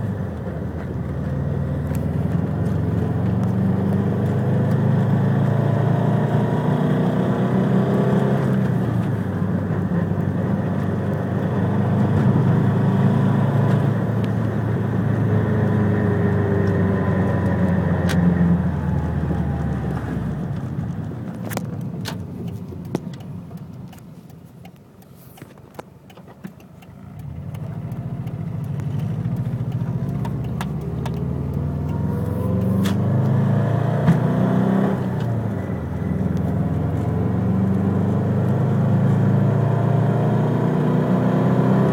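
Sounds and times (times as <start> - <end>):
car engine revving: 0.0 - 23.2, 26.8 - 41.9
sharp clicks: 21.4 - 33.0.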